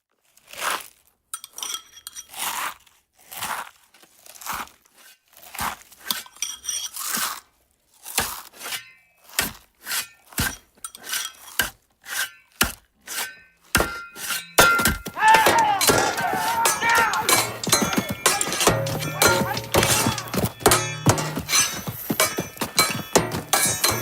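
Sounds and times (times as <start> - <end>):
glass breaking and shattering: 13.8 - 24.0
sharp knocks and crunches: 13.8 - 24.0.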